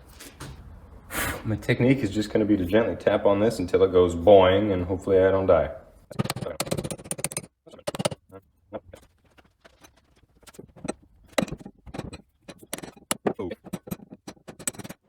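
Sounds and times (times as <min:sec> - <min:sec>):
hammer taps on metal pin: 0:06.1 - 0:08.2.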